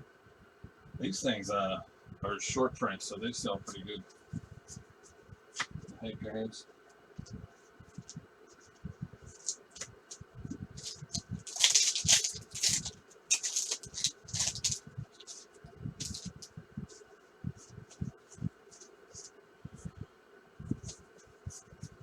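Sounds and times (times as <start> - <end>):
trading cards being flipped through: 9.3 - 10.2, 10.8 - 17.0.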